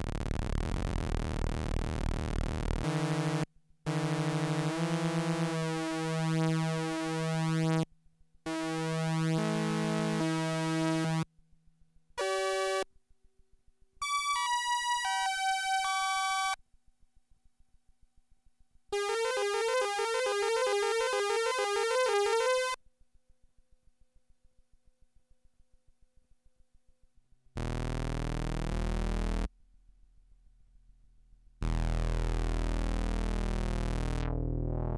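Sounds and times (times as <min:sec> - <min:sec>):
analogue synthesizer notes: 0:00.0 - 0:07.4, 0:27.6 - 0:29.5, 0:31.6 - 0:34.9.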